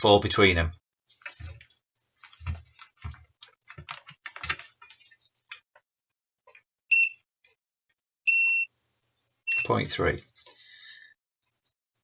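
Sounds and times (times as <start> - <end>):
multimeter beep: 6.9 - 7.2, 8.3 - 9.8.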